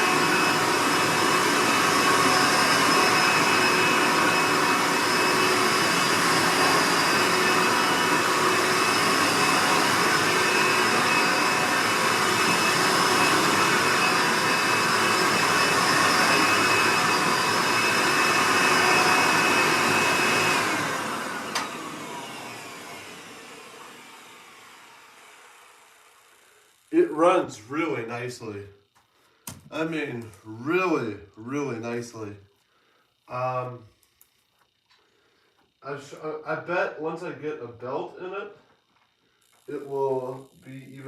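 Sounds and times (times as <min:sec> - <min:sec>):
vacuum motor whining: 0:00.0 - 0:27.9.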